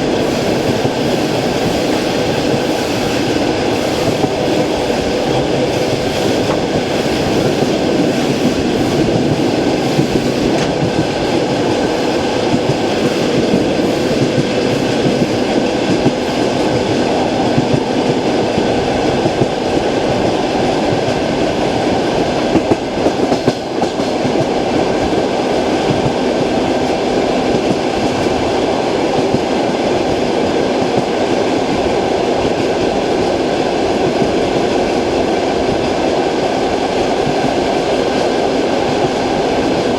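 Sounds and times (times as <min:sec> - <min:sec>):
train running noise: 0:00.0 - 0:39.9
wheels clickety-clack over rail joints: 0:00.0 - 0:39.9.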